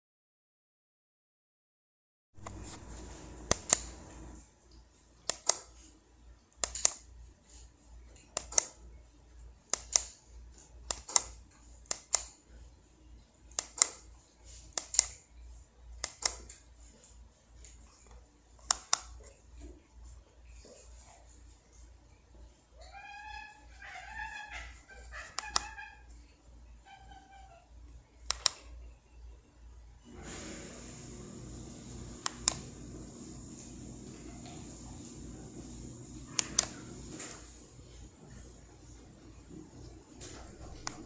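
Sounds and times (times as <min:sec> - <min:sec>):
faint background noise: 0:02.4 - 0:30.4
sharp clicks: 0:03.5 - 0:04.0, 0:05.3 - 0:05.7, 0:06.6 - 0:07.0, 0:08.4 - 0:08.8, 0:09.7 - 0:10.2, 0:10.9 - 0:12.4, 0:13.5 - 0:14.0, 0:14.8 - 0:15.2, 0:16.0 - 0:16.5, 0:28.3 - 0:28.6, 0:32.2 - 0:32.8, 0:36.3 - 0:37.4.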